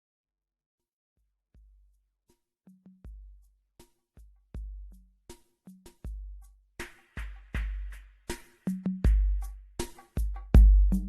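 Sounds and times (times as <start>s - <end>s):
deep bass-drum hits: 10.2s - 11.0s.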